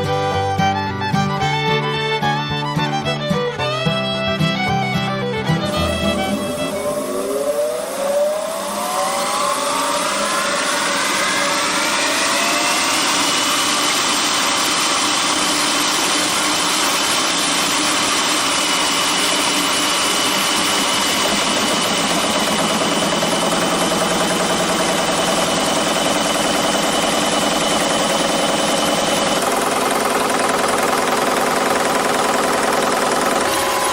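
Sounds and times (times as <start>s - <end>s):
sawmill machine high whine: 0.0s - 33.9s.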